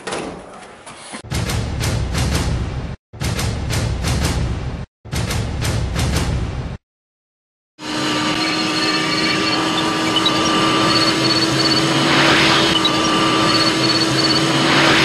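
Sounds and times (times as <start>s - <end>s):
mechanical hum with low drone: 7.8s - 15.0s
small electronic beeps: 8.4s - 11.8s, 12.6s - 14.5s.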